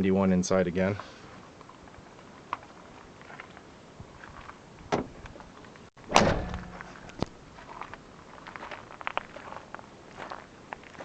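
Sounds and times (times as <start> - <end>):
car door slamming shut: 4.9 - 5.2, 6.1 - 7.0.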